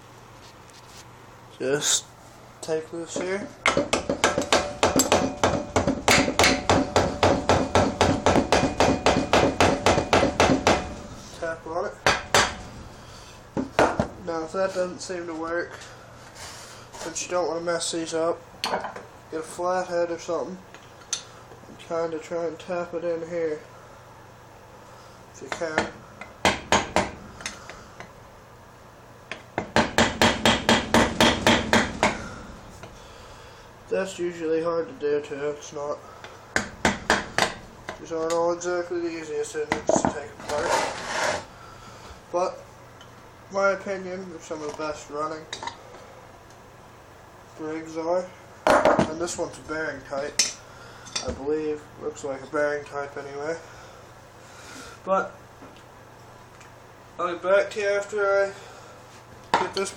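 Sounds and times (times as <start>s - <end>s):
hammer tapping on metal: 3.6s - 10.9s, 12.1s - 12.6s, 25.5s - 27.6s, 29.3s - 32.2s, 36.6s - 38.0s.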